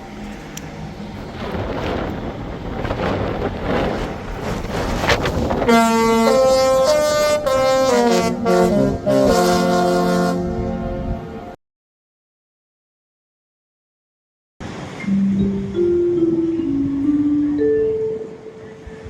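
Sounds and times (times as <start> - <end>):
rushing wind: 0.0 - 11.6, 14.6 - 19.0
ship horn playing a tune: 5.5 - 11.6.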